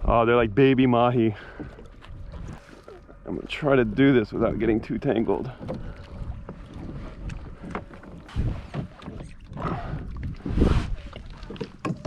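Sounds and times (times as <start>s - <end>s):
water sloshing against kayak hull: 0.0s - 12.0s
knocks and clicks of fishing gear: 11.4s - 12.0s.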